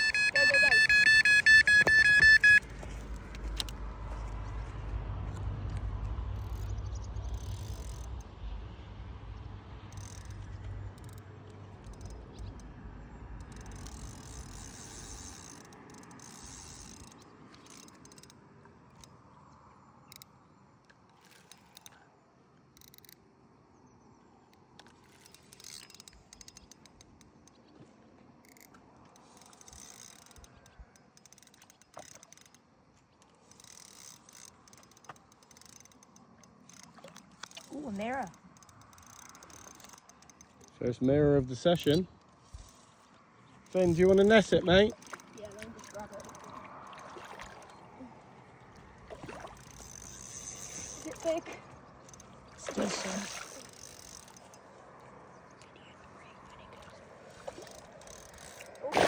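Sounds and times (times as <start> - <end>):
bite alarm high tone: 0.0 - 2.7
faint clicks and rattles: 9.8 - 19.2, 24.5 - 27.8, 28.4 - 40.9.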